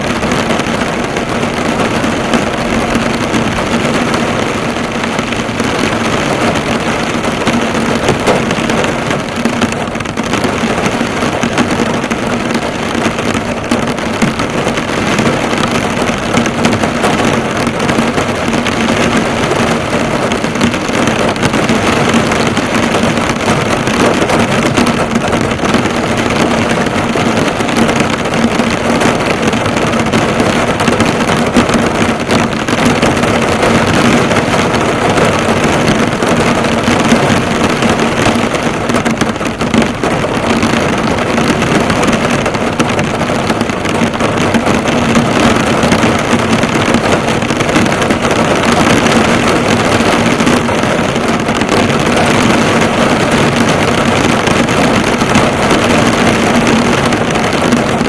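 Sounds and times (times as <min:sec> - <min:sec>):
heavy rain on car roof: 0:00.0 - 0:58.0.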